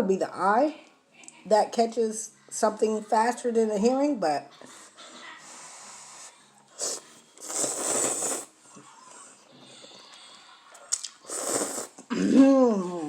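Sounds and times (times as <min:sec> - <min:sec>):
noodles being slurped: 0:06.8 - 0:08.5, 0:10.9 - 0:12.2
quiet chewing: 0:09.1 - 0:12.1.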